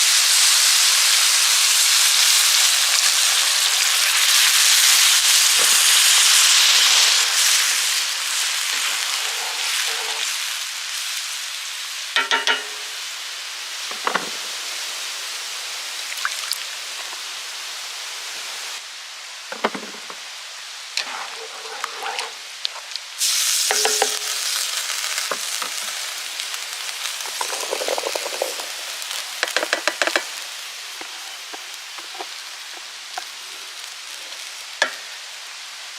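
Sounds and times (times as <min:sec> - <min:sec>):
food sizzling in a pan: 0:00.0 - 0:35.9
knocks against pan: 0:12.2 - 0:12.8
metallic clinks against pan: 0:12.2 - 0:12.9.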